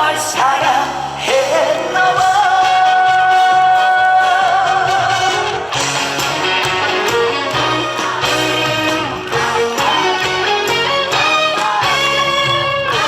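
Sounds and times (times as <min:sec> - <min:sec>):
man singing: 0:00.0 - 0:05.5
backing music: 0:00.0 - 0:13.0.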